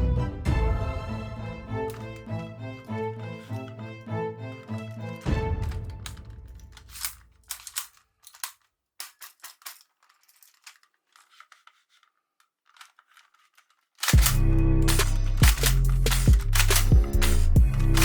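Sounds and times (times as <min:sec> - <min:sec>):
background music: 0:00.0 - 0:07.2, 0:14.1 - 0:18.0
plastic toy gun clicking: 0:05.1 - 0:18.0.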